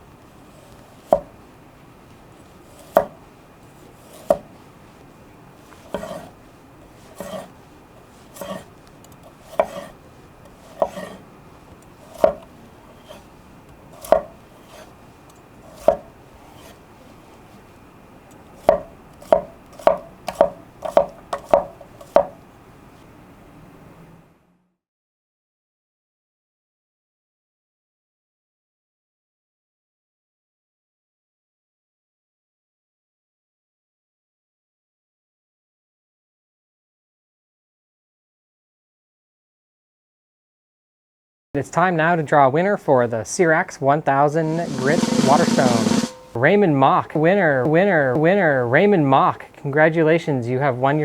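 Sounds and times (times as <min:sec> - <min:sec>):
knife slicing vegetables: 0:05.9 - 0:06.3, 0:07.2 - 0:07.6, 0:08.3 - 0:08.7, 0:09.4 - 0:10.0, 0:10.6 - 0:11.2, 0:15.7 - 0:16.8
blade knocking on cutting board: 0:18.6 - 0:22.3.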